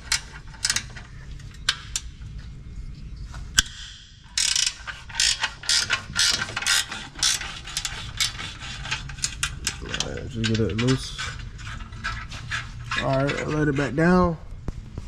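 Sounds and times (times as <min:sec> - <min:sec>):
scattered clicks and knocks: 0:00.0 - 0:02.1, 0:03.6 - 0:14.0
ratchet wrench clicking: 0:03.6 - 0:11.8.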